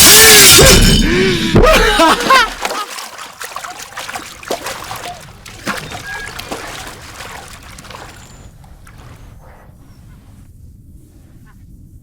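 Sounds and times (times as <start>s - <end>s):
water splashing and trickling: 1.0s - 9.5s.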